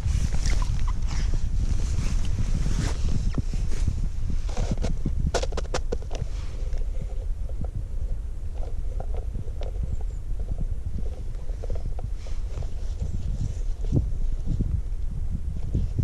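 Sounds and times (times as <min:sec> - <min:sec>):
wind rumbling on microphone: 0:00.0 - 0:16.0.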